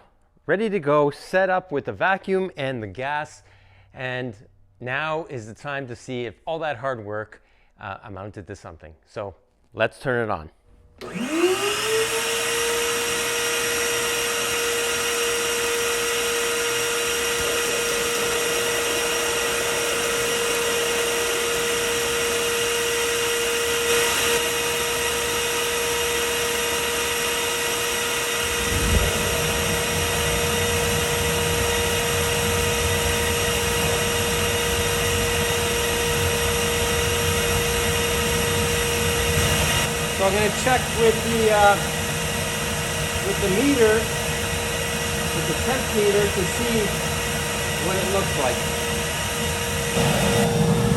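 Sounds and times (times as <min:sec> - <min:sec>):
gas burner roaring: 0:11.0 - 0:50.9
vacuum motor whine: 0:11.0 - 0:50.9.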